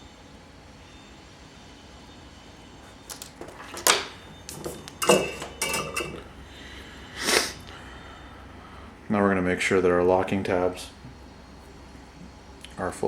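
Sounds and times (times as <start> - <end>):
metal hand tools clinking: 3.1 - 6.2.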